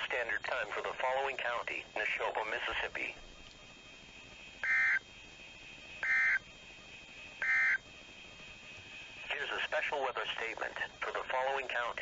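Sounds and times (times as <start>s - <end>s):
faint steady high whine: 0.0s - 12.0s
digital data tone bursts: 4.5s - 12.0s.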